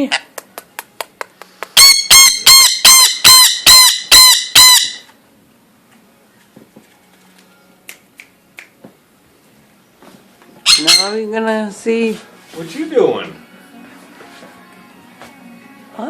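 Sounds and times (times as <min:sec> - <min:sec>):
parakeet shrill screeches: 0:01.8 - 0:05.1, 0:10.6 - 0:11.3.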